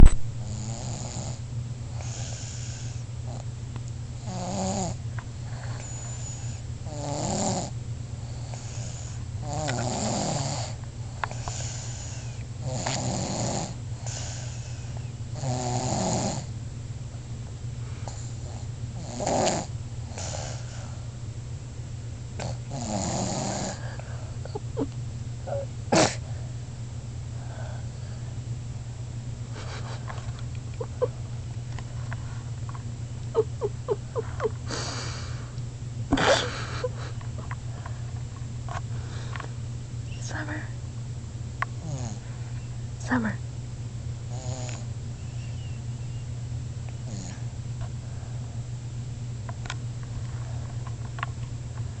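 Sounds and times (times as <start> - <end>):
rasping congested snore: 8.4 - 10.8, 11.4 - 14.8, 15.4 - 16.5, 19.0 - 20.7, 22.4 - 23.8
sharp snort: 25.9 - 26.2.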